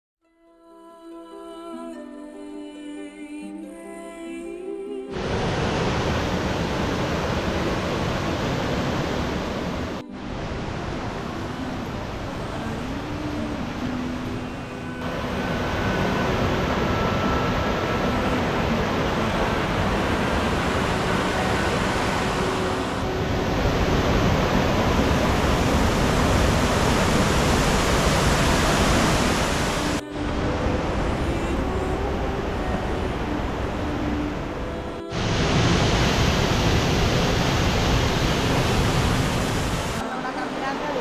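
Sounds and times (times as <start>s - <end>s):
waterfall roar: 5.1s - 33.9s, 35.1s - 41.0s.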